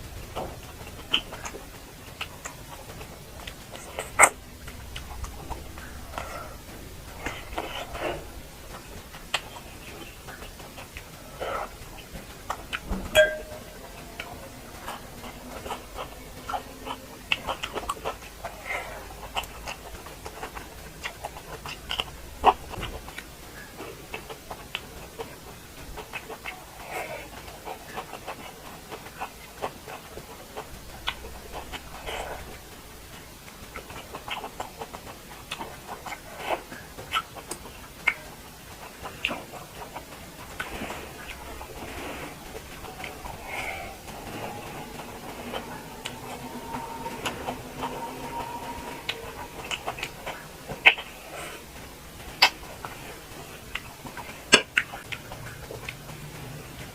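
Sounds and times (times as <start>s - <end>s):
wet chewing and lip smacks: 0.1s - 56.9s
utensil clinking on metal plate: 13.1s - 13.8s.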